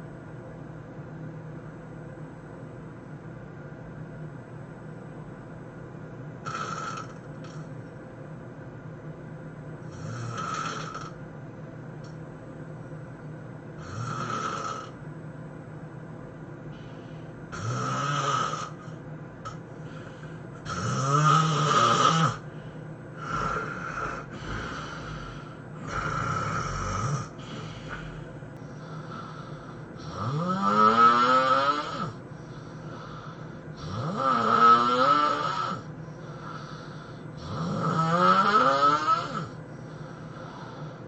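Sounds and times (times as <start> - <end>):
person snoring loudly: 6.4 - 7.6, 9.9 - 11.2, 13.8 - 15.0, 17.5 - 19.0, 19.8 - 22.5, 23.2 - 41.0.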